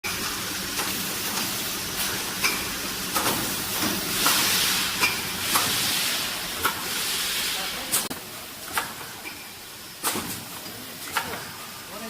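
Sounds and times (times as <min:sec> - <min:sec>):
machine hiss: 0:01.6 - 0:08.1.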